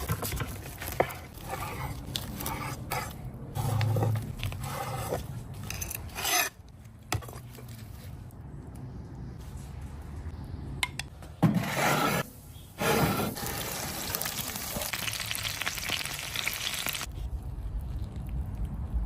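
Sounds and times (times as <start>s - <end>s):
food sizzling on a barbecue: 13.4s - 17.1s.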